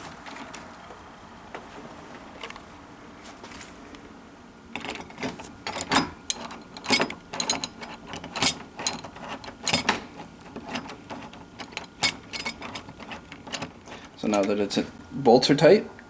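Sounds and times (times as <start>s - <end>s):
screwdriver metallic clicks and rattles: 4.7s - 14.6s.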